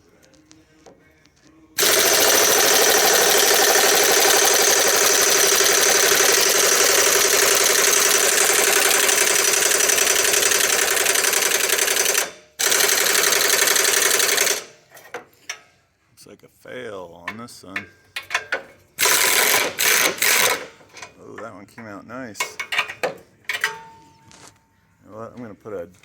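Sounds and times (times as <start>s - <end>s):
impact gun hammering: 1.8s - 14.6s.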